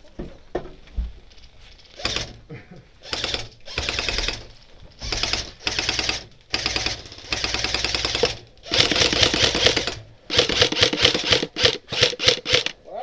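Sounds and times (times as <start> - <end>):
airsoft gun rapid clicking: 1.9 - 2.4, 3.0 - 12.8.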